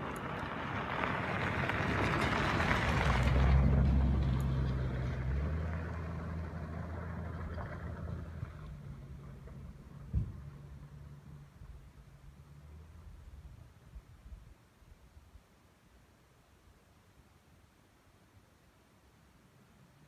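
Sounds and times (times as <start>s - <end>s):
vehicle passing close by: 0.0s - 11.6s
low engine hum: 0.0s - 14.5s.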